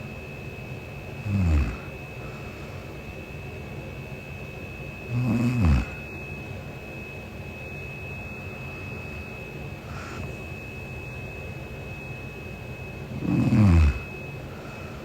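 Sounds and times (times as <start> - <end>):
faint steady high whine: 0.0 - 15.0
woman snoring: 1.2 - 2.0, 5.1 - 6.0, 9.9 - 10.4, 13.1 - 14.8.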